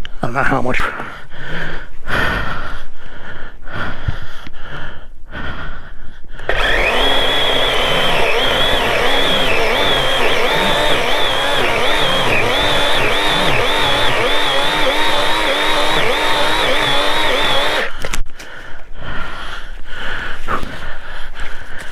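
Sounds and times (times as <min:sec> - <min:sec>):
chainsaw running: 0:06.5 - 0:17.9.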